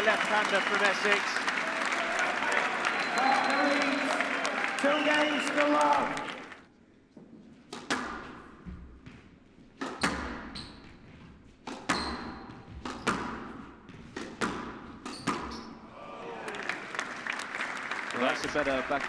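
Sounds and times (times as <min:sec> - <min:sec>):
squash ball hits echoing: 0:07.7 - 0:09.0, 0:09.8 - 0:10.9, 0:11.6 - 0:15.8
shoe squeaks: 0:10.0 - 0:11.3, 0:11.9 - 0:13.2, 0:15.0 - 0:15.8.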